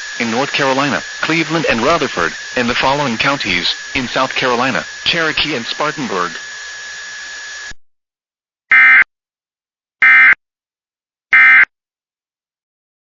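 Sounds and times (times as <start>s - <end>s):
broadcast hiss with thin tone: 0.0s - 7.7s
digital data bursts: 0.0s - 7.7s.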